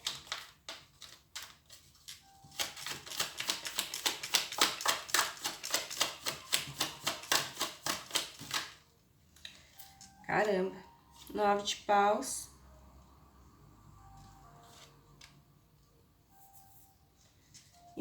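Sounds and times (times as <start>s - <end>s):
cards being shuffled: 0.0s - 8.8s, 14.2s - 15.4s.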